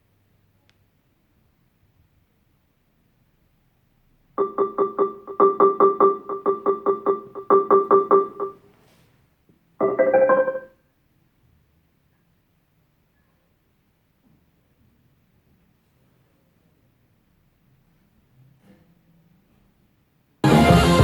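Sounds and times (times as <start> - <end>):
chime of rising notes: 4.4 - 8.5, 9.8 - 10.7
repeated electric piano notes: 4.4 - 8.6, 9.8 - 10.7.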